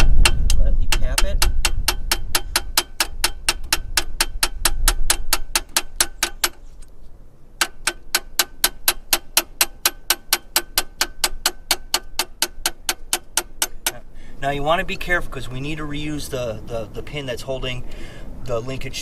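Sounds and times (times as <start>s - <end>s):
hammer tapping metal punch: 0.0s - 6.7s, 7.6s - 14.0s.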